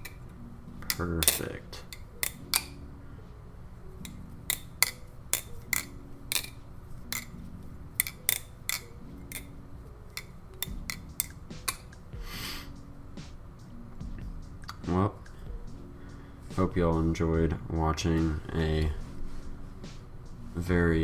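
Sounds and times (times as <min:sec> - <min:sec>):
butterfly knife metal clacks: 0:00.0 - 0:02.9, 0:03.9 - 0:12.0.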